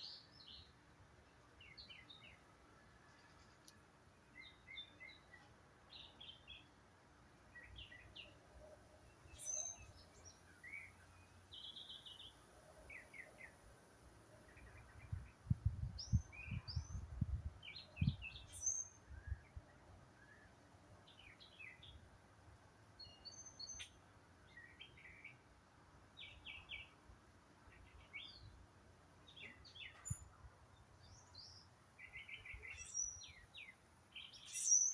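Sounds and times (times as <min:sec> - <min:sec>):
wild birds chirping: 0:07.5 - 0:17.0, 0:27.6 - 0:34.9.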